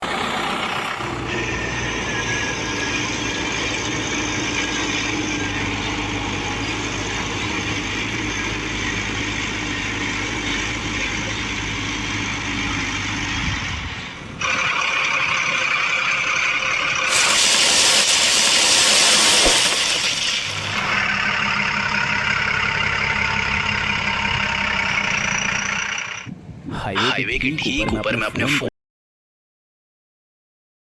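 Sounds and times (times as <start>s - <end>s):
heavy vehicle engine humming: 0.0s - 26.6s
hissing rush of noise: 17.1s - 20.9s.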